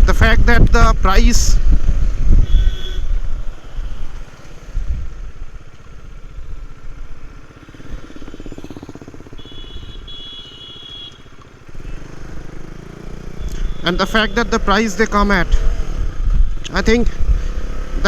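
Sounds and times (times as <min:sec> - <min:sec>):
wind noise: 0:00.0 - 0:08.7, 0:15.2 - 0:18.0
motorcycle engine running: 0:01.6 - 0:18.0.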